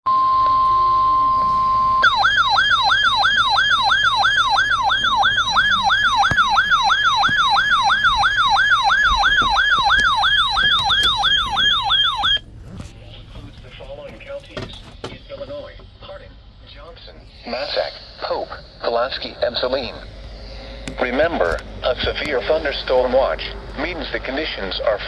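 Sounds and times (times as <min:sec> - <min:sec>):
fast warbling siren: 0:01.8 - 0:12.4.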